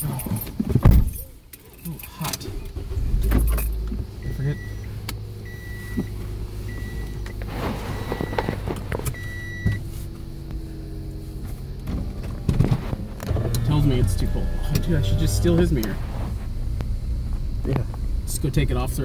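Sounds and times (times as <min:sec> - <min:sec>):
car engine running: 0:00.0 - 0:19.0
electronic warning chime beeping: 0:04.2 - 0:07.2.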